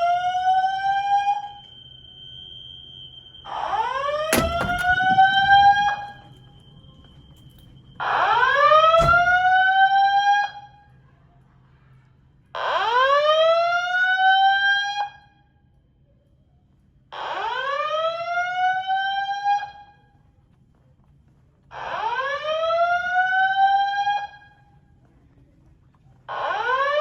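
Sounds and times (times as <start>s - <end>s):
fire alarm whoop: 0.0s - 10.8s, 12.6s - 15.3s, 17.2s - 20.0s, 21.7s - 24.6s, 26.3s - 27.0s.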